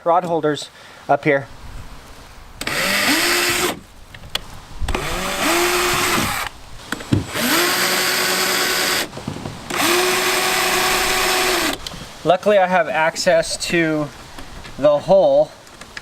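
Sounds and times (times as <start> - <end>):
cordless drill whining: 2.6 - 3.8, 4.9 - 12.0.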